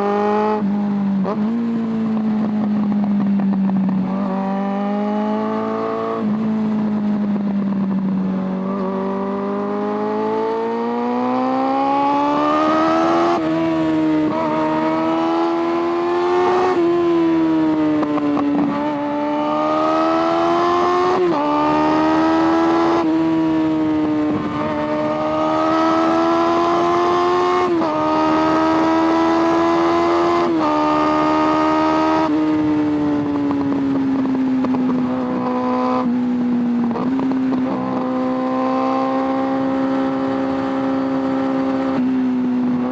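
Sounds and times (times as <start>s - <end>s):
motorcycle engine running: 0.0s - 42.9s.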